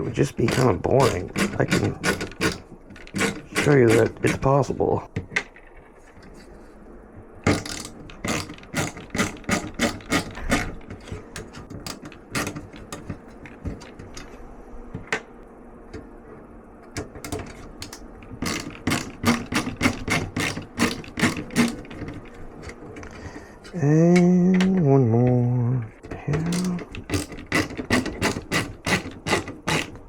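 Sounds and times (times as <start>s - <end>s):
screwdriver ratcheting clicks: 0.4s - 4.5s, 7.4s - 14.3s, 17.0s - 22.4s, 26.4s - 30.0s.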